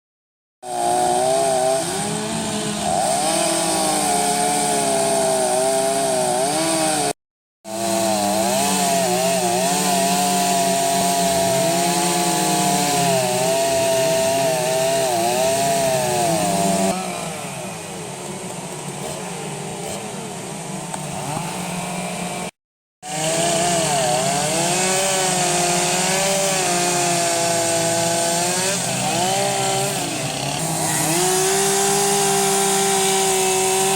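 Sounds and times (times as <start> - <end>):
chainsaw cutting wood: 0.6 - 20.2, 20.9 - 33.9.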